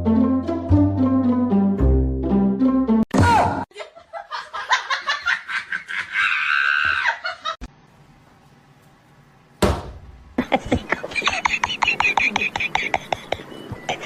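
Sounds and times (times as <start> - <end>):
high-pitched laughter: 3.7 - 7.6, 10.4 - 14.0.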